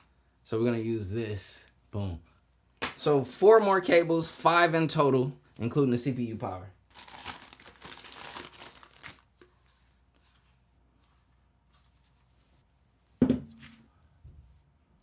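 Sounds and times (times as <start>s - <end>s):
plastic packaging crinkling: 6.9s - 9.5s.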